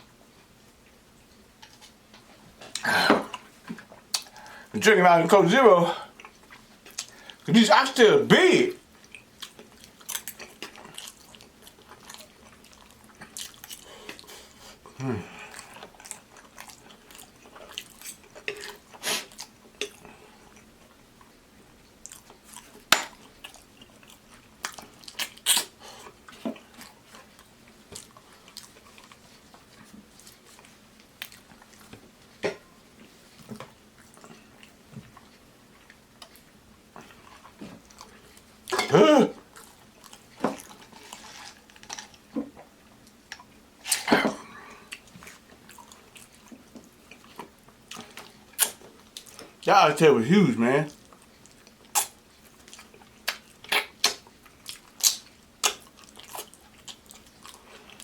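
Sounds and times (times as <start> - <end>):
wet chewing and lip smacking: 2.7 - 4.6, 8.9 - 32.3, 44.7 - 49.6, 50.9 - 58.0.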